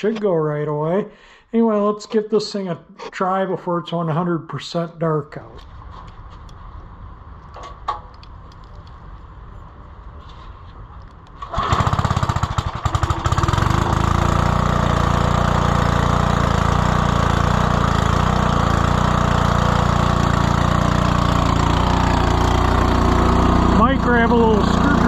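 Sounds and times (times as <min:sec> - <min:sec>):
small engine starting and running: 0:11.4 - 0:25.0.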